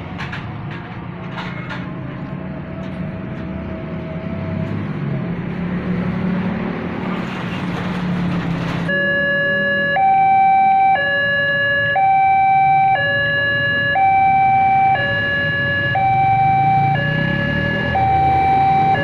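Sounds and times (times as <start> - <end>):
road traffic engines: 0.0 - 19.0
level crossing warning siren: 8.9 - 19.0.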